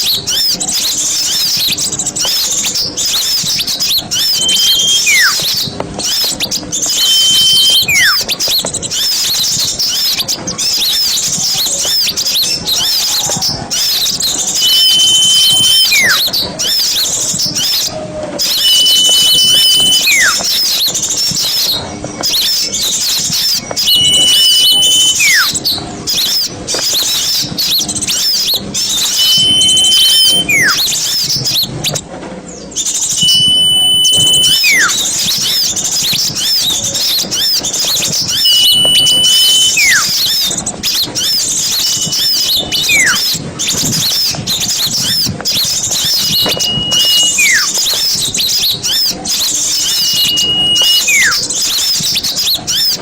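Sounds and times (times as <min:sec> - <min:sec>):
songbirds chirping and trilling: 0:00.0 - 0:53.0
long descending whistle: 0:04.1 - 0:05.7, 0:06.8 - 0:08.3, 0:14.5 - 0:16.3, 0:18.4 - 0:20.6, 0:23.7 - 0:25.6, 0:28.8 - 0:30.9, 0:33.0 - 0:35.6, 0:38.3 - 0:40.5, 0:41.2 - 0:43.4, 0:45.9 - 0:52.0.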